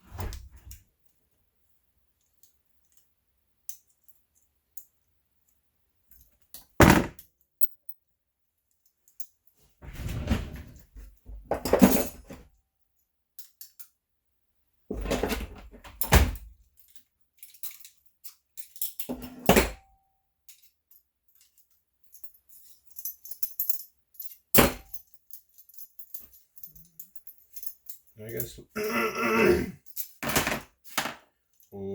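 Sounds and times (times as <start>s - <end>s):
metal hardware jangling: 7.6s - 8.0s, 15.2s - 19.7s, 20.5s - 28.8s, 29.8s - 30.3s.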